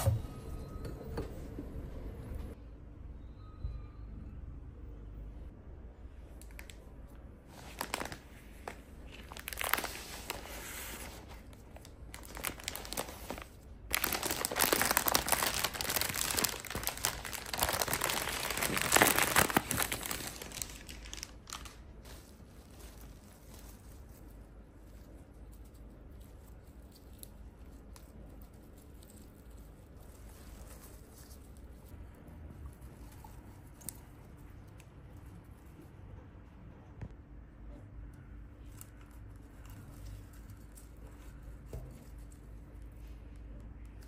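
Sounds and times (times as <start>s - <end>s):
packaging crinkling and rustling: 7.5s - 31.9s.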